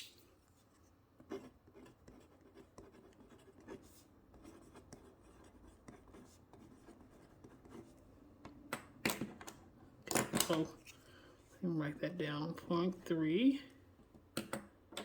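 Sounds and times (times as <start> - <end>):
pencil scratching on paper: 0.6 - 8.0.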